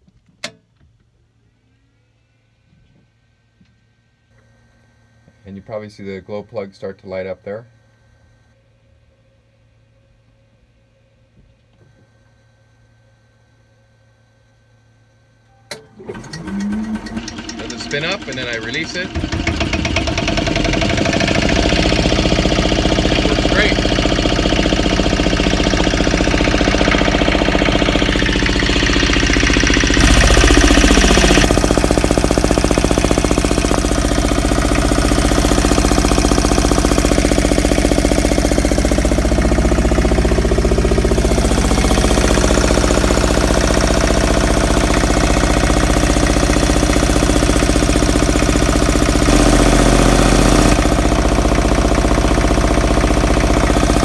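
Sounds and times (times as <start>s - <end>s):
diesel generator running: 15.6s - 54.0s.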